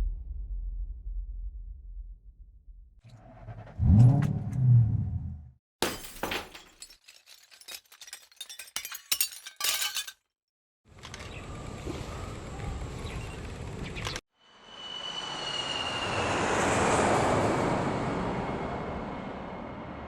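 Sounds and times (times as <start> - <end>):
steady rumble: 0.0 - 5.5
engine-like rumble: 3.1 - 5.5
glass shattering: 5.8 - 10.3.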